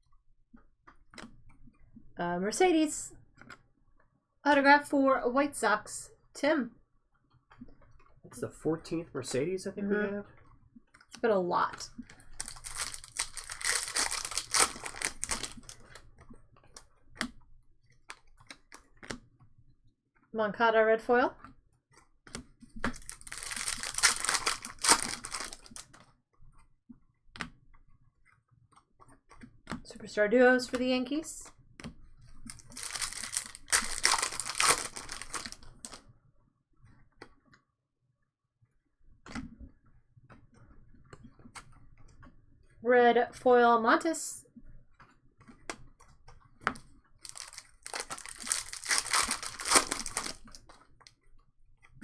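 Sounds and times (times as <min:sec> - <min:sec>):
foil wrapper crinkling and tearing: 0:12.1 - 0:16.0, 0:22.8 - 0:25.9, 0:32.4 - 0:36.0, 0:47.2 - 0:50.6.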